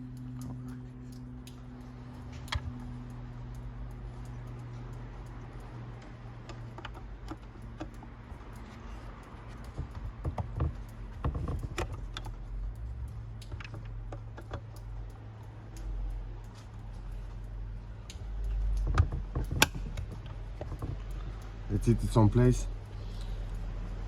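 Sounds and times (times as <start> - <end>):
steady low hum: 0.0 - 24.0
plastic clicks and knocks: 6.4 - 12.4, 18.6 - 21.2.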